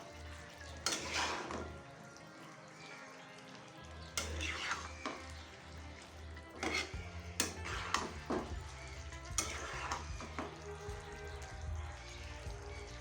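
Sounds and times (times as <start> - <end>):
faint sizzle: 0.0 - 13.0
spatula scraping a pan: 0.2 - 2.0, 3.4 - 11.5.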